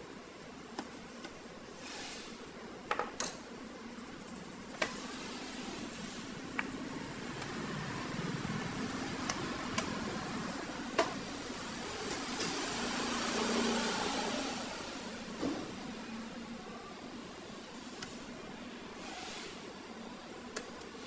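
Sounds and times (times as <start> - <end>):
steady background hiss: 0.0 - 21.0.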